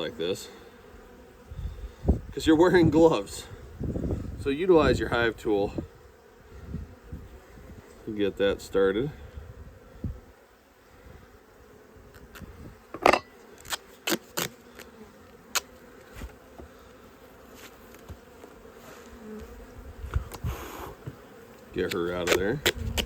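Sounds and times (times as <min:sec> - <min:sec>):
bees buzzing: 0:00.0 - 0:23.0
duct tape ripping: 0:13.6 - 0:14.9.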